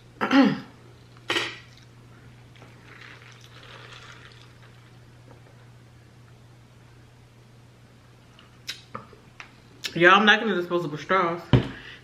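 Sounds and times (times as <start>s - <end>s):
steady low hum: 0.0s - 12.0s
faint eating sounds: 1.1s - 5.6s.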